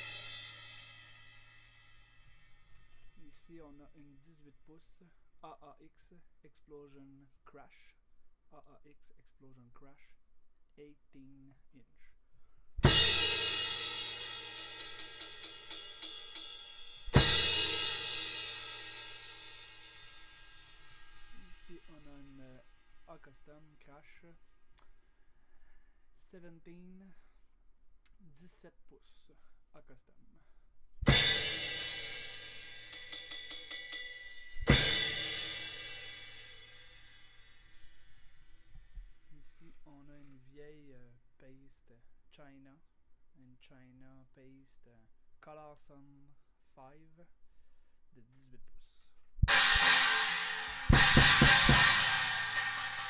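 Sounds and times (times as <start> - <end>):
crash cymbal struck hard: 0.0 - 3.3, 12.8 - 21.8, 31.1 - 38.5, 49.5 - 53.0
quick light cymbal hits: 0.0 - 3.7, 12.8 - 23.1, 31.1 - 39.8, 49.4 - 53.0.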